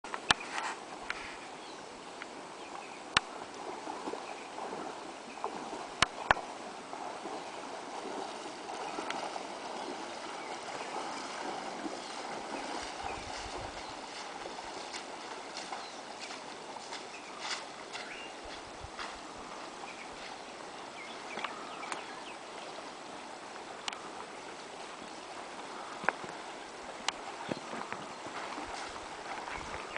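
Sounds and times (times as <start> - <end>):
stream running: 0.0 - 29.9.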